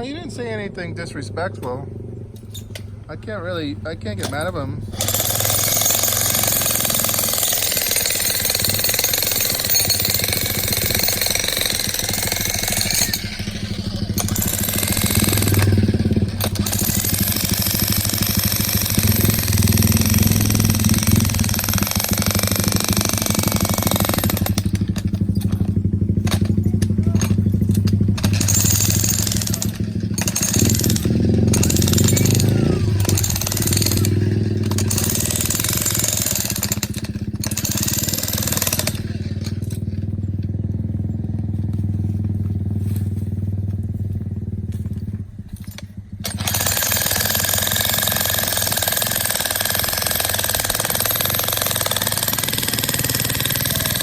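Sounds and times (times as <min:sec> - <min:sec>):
jackhammer breaking rock: 0:04.1 - 0:40.2, 0:44.7 - 0:54.0.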